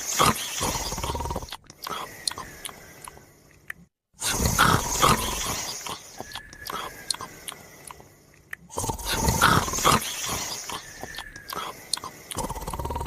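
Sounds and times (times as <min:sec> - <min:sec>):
quiet breathing: 0:01.8 - 0:03.6, 0:04.2 - 0:13.0
loud snoring: 0:04.2 - 0:05.9, 0:08.7 - 0:10.9, 0:12.4 - 0:13.0.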